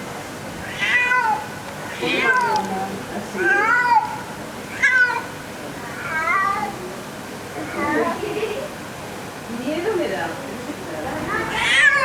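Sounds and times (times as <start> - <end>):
cat meowing: 0.6 - 2.8, 3.4 - 5.3, 5.9 - 6.8, 11.1 - 12.0.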